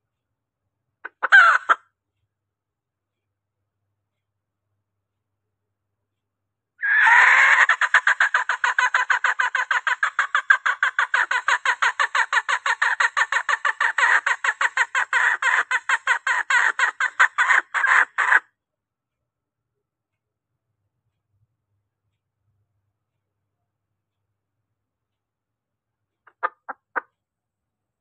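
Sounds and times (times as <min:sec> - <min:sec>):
hen clucking: 0:01.1 - 0:01.8, 0:06.8 - 0:18.4, 0:26.3 - 0:27.1.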